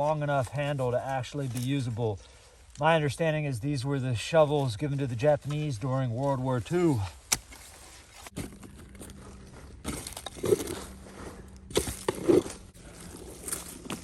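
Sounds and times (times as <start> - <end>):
shovel chopping into dirt: 6.9 - 9.1, 11.7 - 12.7.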